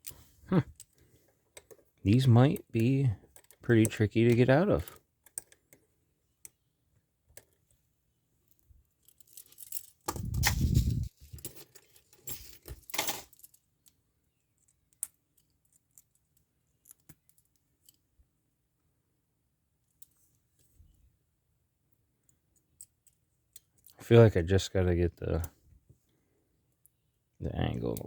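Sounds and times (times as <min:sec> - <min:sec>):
lock pick clicking in handcuffs: 0:01.6 - 0:05.8
handcuffs rattling and jostling: 0:08.5 - 0:13.9.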